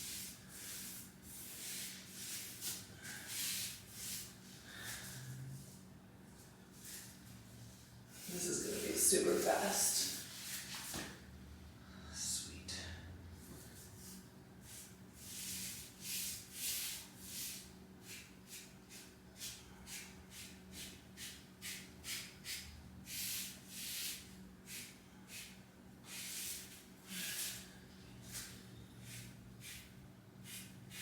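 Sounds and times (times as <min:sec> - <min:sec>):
sponge swishing on wood: 0:00.0 - 0:05.8.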